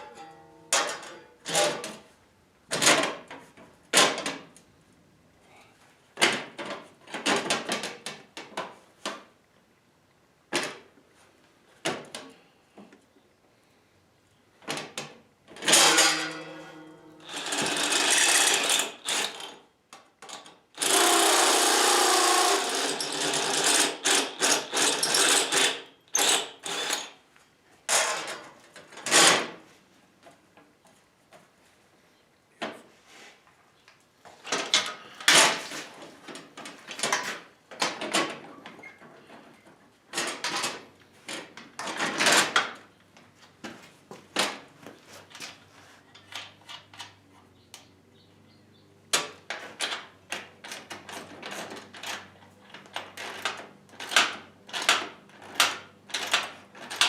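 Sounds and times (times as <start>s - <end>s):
power tool running: 17.2s - 19.5s, 20.8s - 27.1s.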